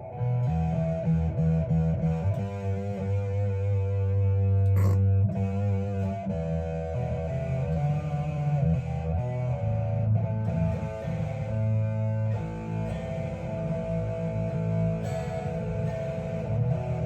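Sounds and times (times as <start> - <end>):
distorted electric guitar: 0.0 - 17.0.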